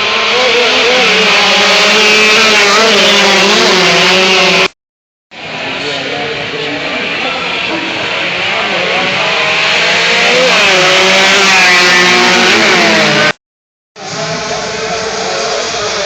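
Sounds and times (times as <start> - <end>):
motorcycle engine revving: 0.0 - 4.8, 7.7 - 13.4.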